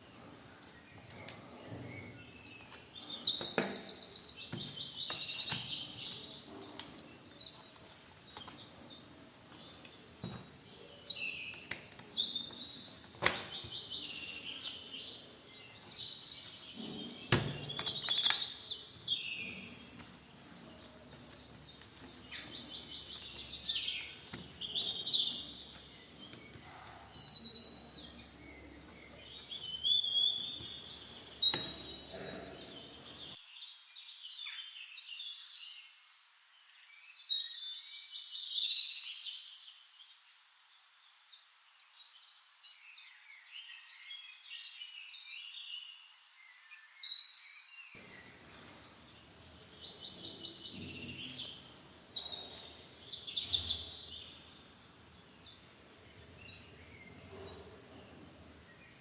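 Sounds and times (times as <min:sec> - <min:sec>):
small birds chirping and trilling: 0:00.0 - 0:59.0.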